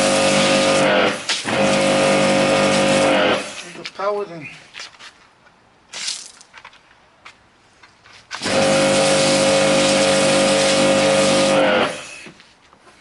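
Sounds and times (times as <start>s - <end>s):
pressure washer running: 0.0s - 3.8s, 8.4s - 12.3s.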